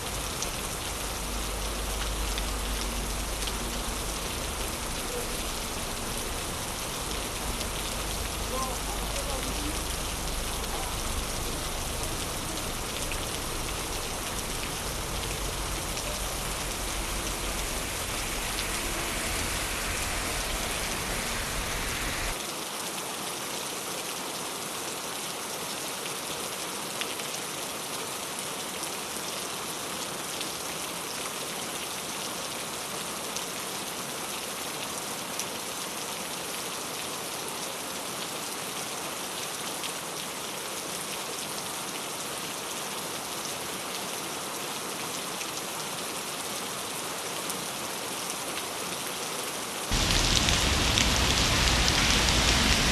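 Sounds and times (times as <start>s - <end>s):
low rumble: 0.0s - 22.4s, 49.9s - 52.9s
rain falling on a street: 0.0s - 52.9s.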